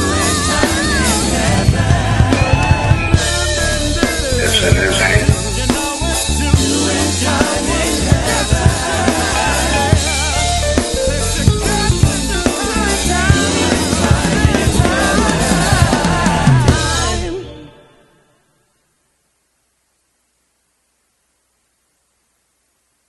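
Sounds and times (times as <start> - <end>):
gospel rnb band playing: 0.0 - 18.1.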